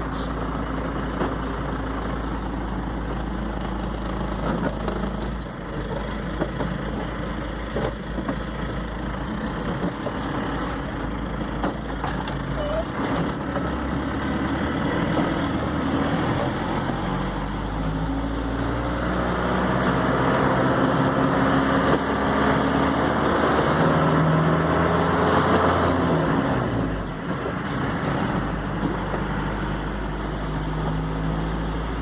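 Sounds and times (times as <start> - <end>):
hiss of road noise: 0.0 - 1.0
vehicle engine running: 0.0 - 32.0.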